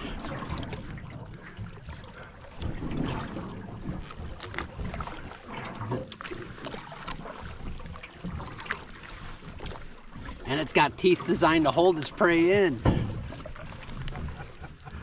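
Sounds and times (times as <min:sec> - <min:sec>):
paddles splashing in water: 0:00.0 - 0:15.0
light knocks on canoe: 0:12.8 - 0:13.2.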